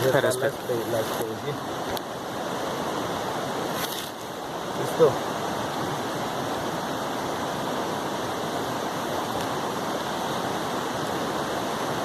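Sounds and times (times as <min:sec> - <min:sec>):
river water rushing: 0:00.0 - 0:12.0.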